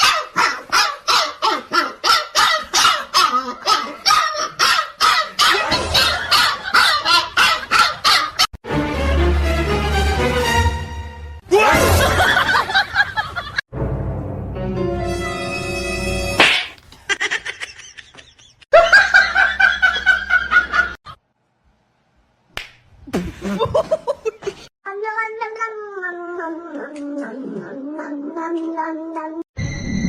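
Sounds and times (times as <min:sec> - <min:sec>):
burst of laughter: 0:05.6 - 0:08.5.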